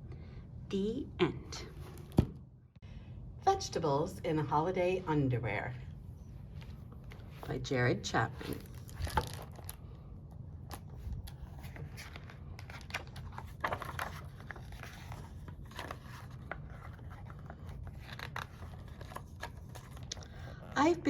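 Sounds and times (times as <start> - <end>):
low room hum: 0.0 - 21.0
paper pages rustling and turning: 6.5 - 10.0, 10.6 - 21.0.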